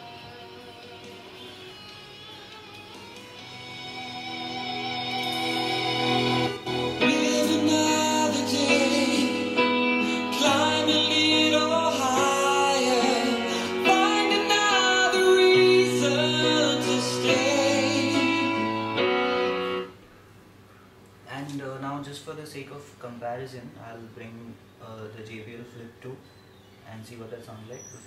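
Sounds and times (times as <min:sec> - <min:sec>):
song with singing and guitar: 0:00.0 - 0:19.9.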